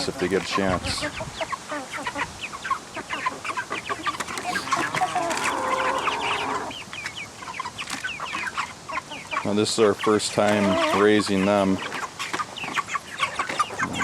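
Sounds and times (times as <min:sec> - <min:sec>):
chickens clucking and peeping: 0:00.0 - 0:14.0.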